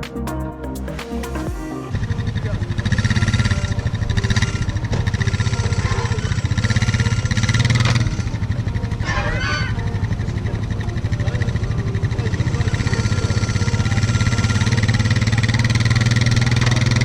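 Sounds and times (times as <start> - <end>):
vehicle engine revving: 1.4 - 17.0.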